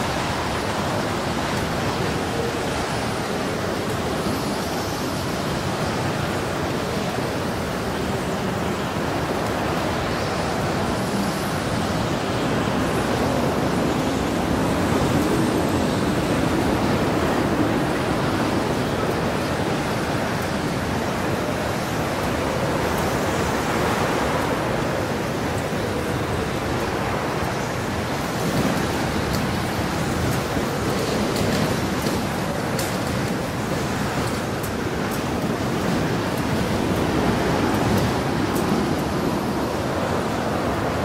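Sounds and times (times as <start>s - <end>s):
storm wind rushing: 0.0s - 41.0s.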